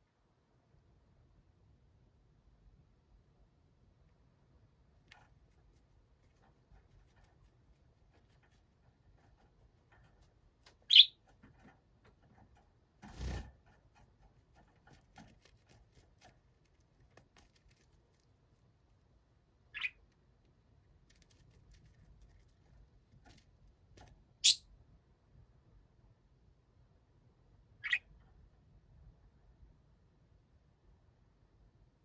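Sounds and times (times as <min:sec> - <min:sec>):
budgerigar chirps: 0:10.9 - 0:11.2, 0:19.7 - 0:20.0, 0:24.4 - 0:24.6, 0:27.8 - 0:28.1.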